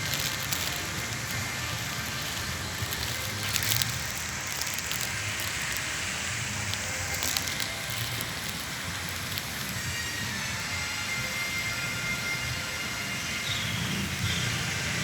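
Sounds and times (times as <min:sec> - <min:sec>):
fountain water splashing: 0:00.0 - 0:09.8.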